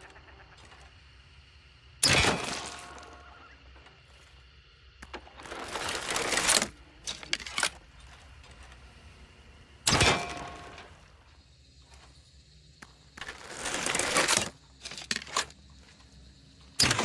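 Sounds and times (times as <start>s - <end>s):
crossbow string scraping draw: 13.2s - 14.5s.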